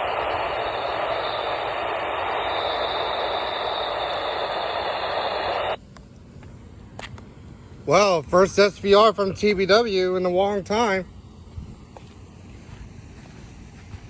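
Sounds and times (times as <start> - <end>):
radio static hiss: 0.0 - 5.8.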